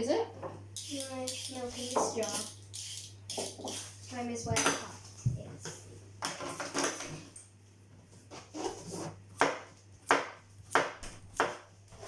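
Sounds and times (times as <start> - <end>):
knife chopping on cutting board: 8.4 - 12.0.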